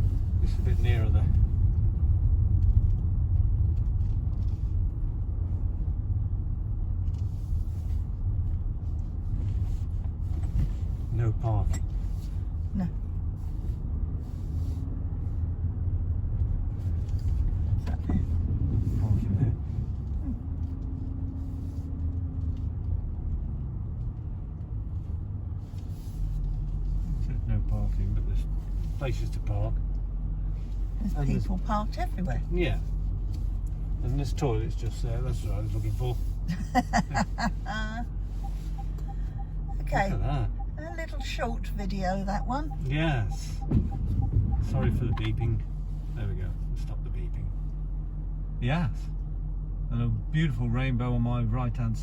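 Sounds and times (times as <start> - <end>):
car cabin engine and road rumble: 0.0 - 52.0
faint held hum: 25.1 - 51.0.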